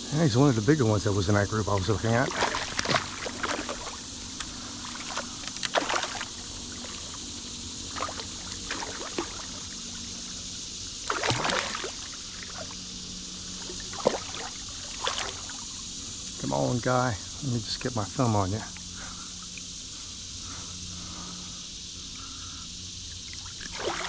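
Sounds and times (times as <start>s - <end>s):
creek water running: 0.5s - 21.4s, 23.1s - 24.0s
fish splashing at surface: 2.2s - 7.2s, 7.9s - 10.0s, 11.0s - 12.7s, 13.6s - 15.6s, 23.2s - 24.0s.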